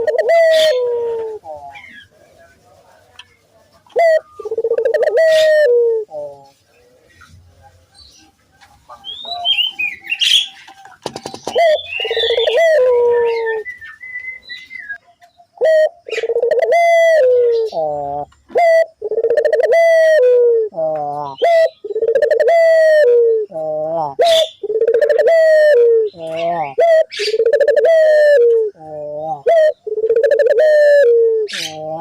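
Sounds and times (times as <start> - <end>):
dove cooing: 0.0 - 2.3, 3.8 - 32.0
thin higher bird chirps: 9.0 - 16.4.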